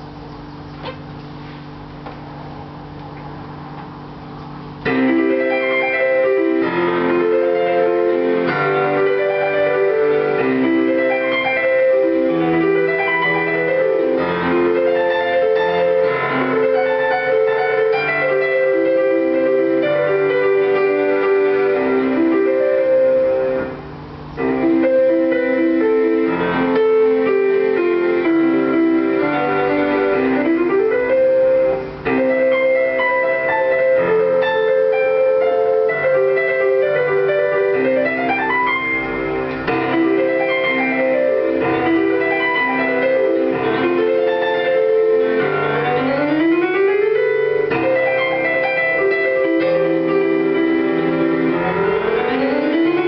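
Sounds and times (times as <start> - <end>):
solo piano piece: 0.0 - 53.0.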